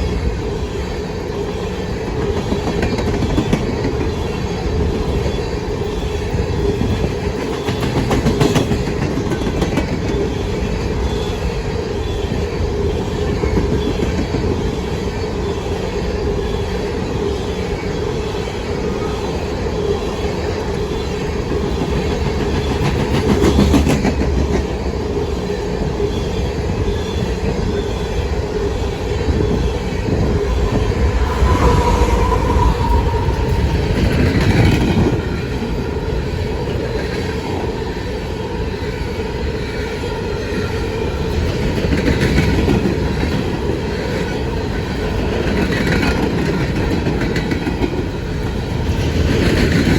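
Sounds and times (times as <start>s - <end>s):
freight train wheels rumbling: 0.0s - 49.9s.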